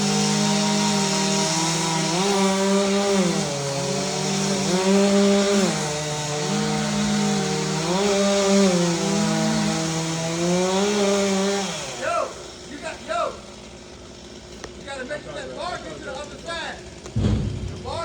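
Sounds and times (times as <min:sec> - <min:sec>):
chainsaw engine at high revs: 0:00.0 - 0:18.0.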